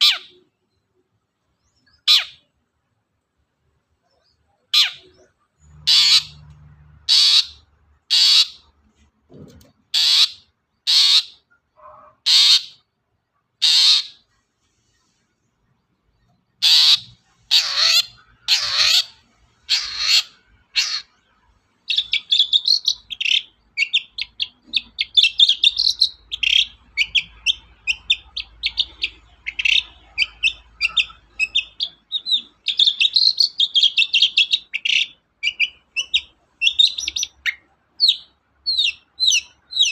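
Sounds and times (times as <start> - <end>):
shrike calling: 4.6 - 6.5, 7.1 - 8.7, 16.6 - 21.2
fast chattering birdsong: 16.6 - 39.9.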